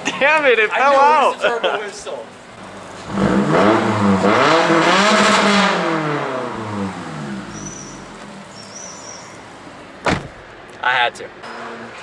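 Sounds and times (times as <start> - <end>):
car engine accelerating: 2.6 - 9.6.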